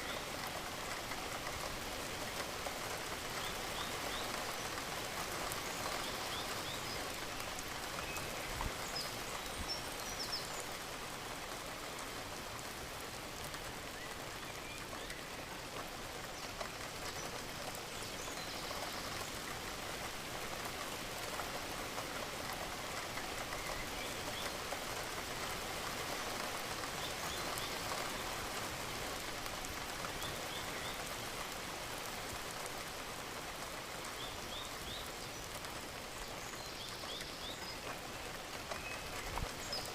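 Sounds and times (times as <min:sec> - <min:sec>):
steady rain patter: 0:00.0 - 0:39.9.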